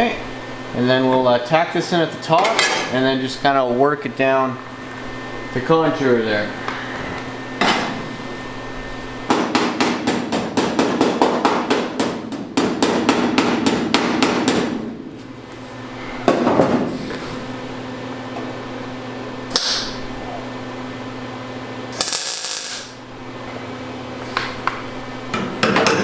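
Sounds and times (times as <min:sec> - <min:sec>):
steady low hum: 0:00.0 - 0:26.0
hammer tapping on sheet steel: 0:09.3 - 0:14.7.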